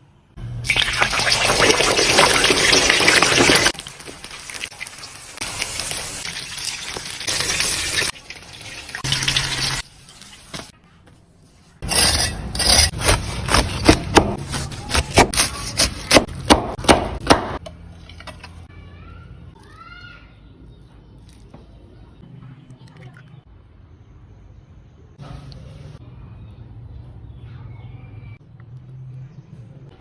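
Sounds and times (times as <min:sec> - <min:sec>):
oil sizzling: 0:00.6 - 0:10.7.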